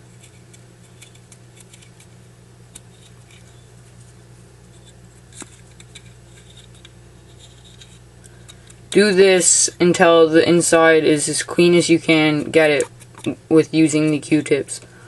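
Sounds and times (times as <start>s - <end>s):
steady low hum: 0.0s - 15.0s
cotton swab scratching on metal: 2.8s - 8.0s.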